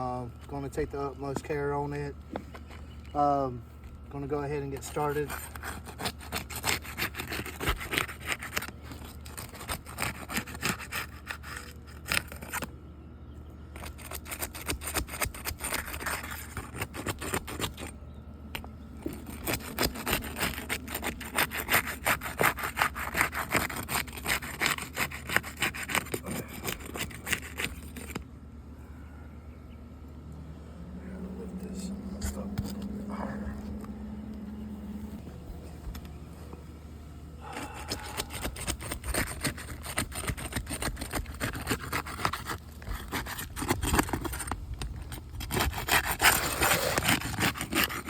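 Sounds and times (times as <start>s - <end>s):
shingles being scraped: 4.2s - 12.7s, 13.7s - 28.2s, 37.4s - 48.0s.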